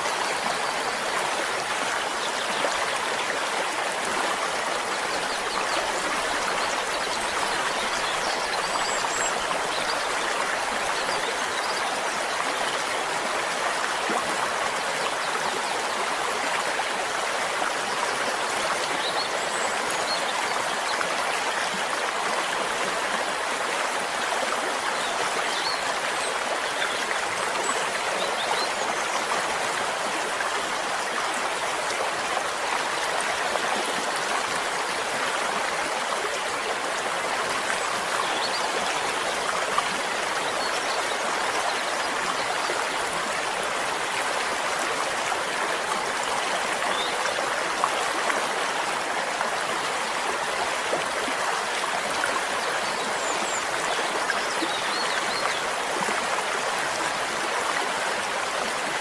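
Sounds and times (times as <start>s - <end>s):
stream running water: 0.0s - 59.0s.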